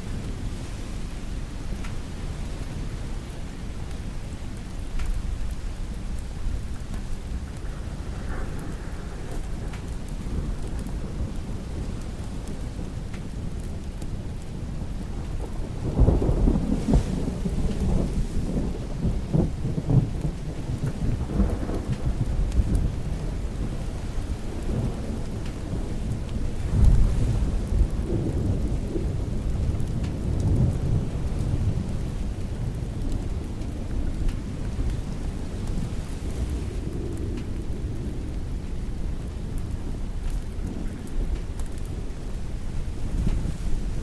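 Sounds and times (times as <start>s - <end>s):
steady rain: 0.0s - 44.0s
thunder rumbling: 0.0s - 44.0s.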